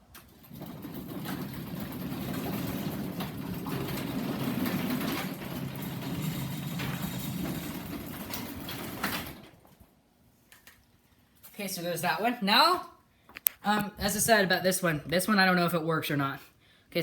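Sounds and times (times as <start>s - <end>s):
garage door opener motor hum: 0.0s - 9.8s.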